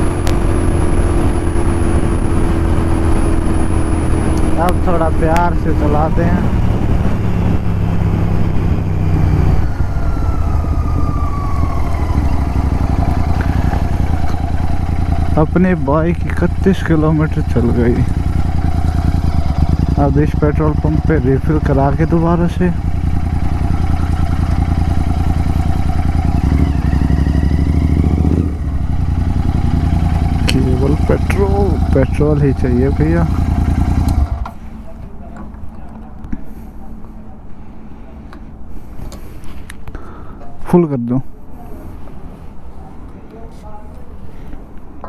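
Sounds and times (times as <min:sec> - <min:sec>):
motorcycle engine running: 0:00.0 - 0:35.2.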